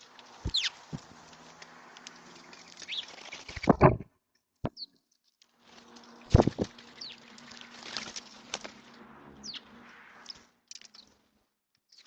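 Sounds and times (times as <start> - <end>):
small birds chirping: 0.0 - 1.5, 2.1 - 3.8, 4.7 - 5.0, 6.3 - 7.9, 9.4 - 11.2
sharp knocks: 3.6 - 4.0.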